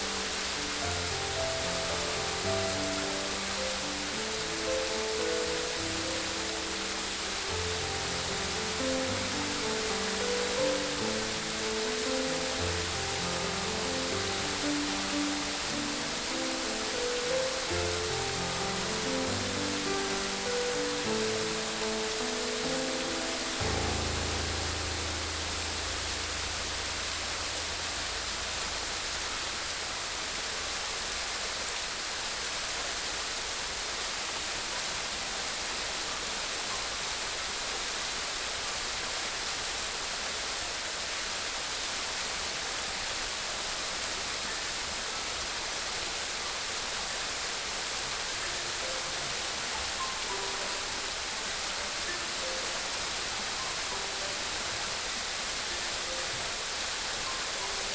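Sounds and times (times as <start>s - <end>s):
low musical tone: 0.0s - 31.4s, 48.1s - 57.9s
water rushing: 0.0s - 57.9s.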